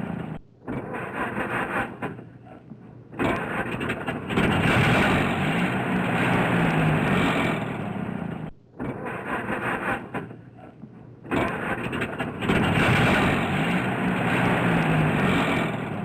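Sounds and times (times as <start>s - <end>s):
car engine starting and revving: 3.2s - 8.5s, 11.3s - 16.0s.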